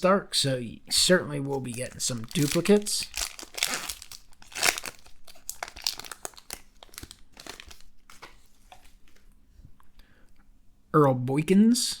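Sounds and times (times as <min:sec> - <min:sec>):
card pack wrapper crinkling and tearing: 0:01.4 - 0:09.0.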